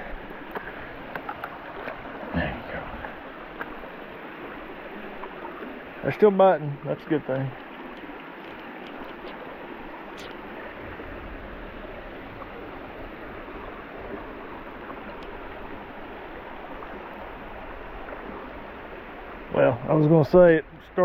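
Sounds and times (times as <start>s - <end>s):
stream water rushing: 0.0s - 21.0s
faint clicks: 3.0s - 3.8s, 7.3s - 9.5s, 14.8s - 15.4s.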